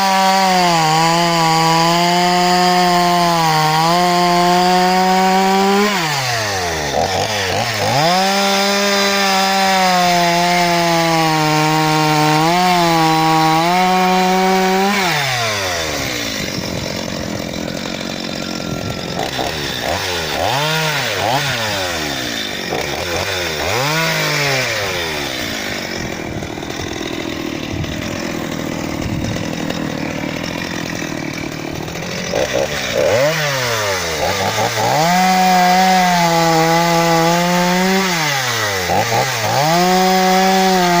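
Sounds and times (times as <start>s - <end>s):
chainsaw revving: 0.0s - 41.0s.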